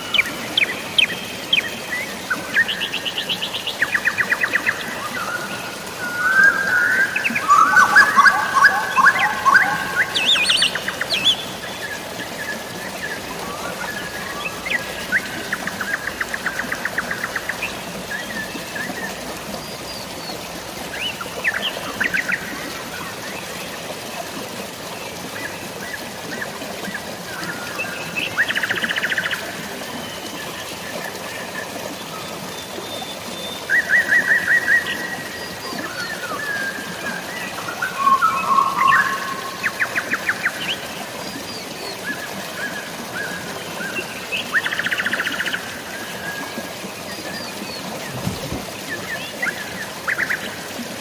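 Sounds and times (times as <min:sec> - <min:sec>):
flowing water: 0:00.0 - 0:51.0
light rain hiss: 0:00.0 - 0:51.0
bird warbling call: 0:06.0 - 0:11.6, 0:37.5 - 0:40.8
birds chirping and trilling: 0:06.0 - 0:20.4, 0:35.6 - 0:46.1.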